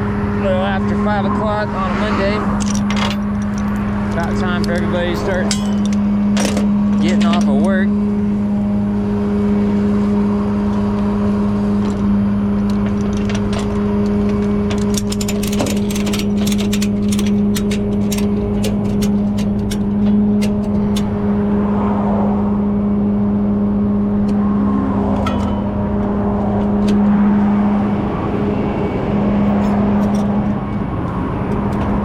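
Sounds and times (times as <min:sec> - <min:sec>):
passing traffic: 0:00.0 - 0:32.0
truck engine droning: 0:00.0 - 0:32.0
ratchet straps clicking: 0:11.9 - 0:21.2.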